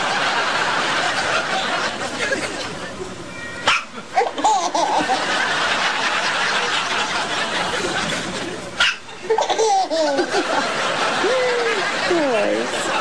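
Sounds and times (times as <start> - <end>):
baby giggling: 4.2 - 5.2, 9.2 - 10.5.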